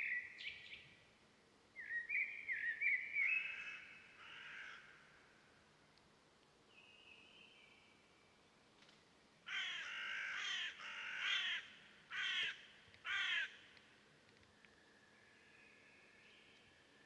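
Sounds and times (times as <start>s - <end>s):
crow cawing: 3.5s - 5.1s, 9.5s - 13.6s.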